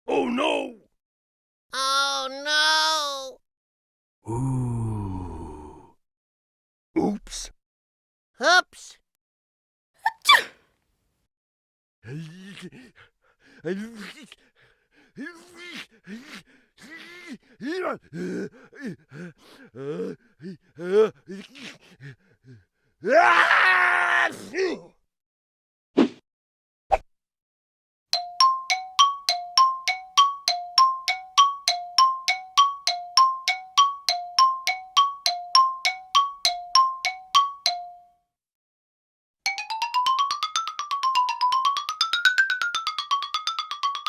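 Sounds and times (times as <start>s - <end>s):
cartoon groan: 4.2s - 6.0s
cartoon sneeze effects: 10.0s - 10.6s
cartoon bell tones: 28.2s - 38.1s.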